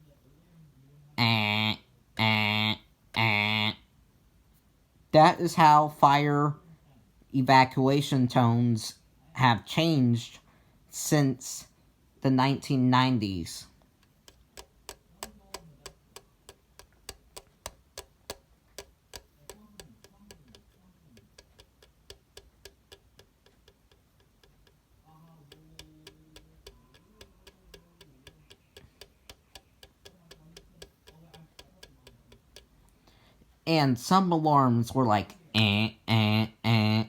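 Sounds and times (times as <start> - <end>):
faint steady ticking: 11.6 - 34.0.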